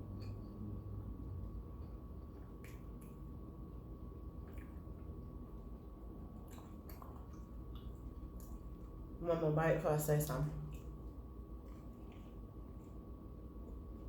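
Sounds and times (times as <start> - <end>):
faint steady hum: 0.0 - 14.0
person chewing: 4.4 - 8.9, 10.7 - 14.0.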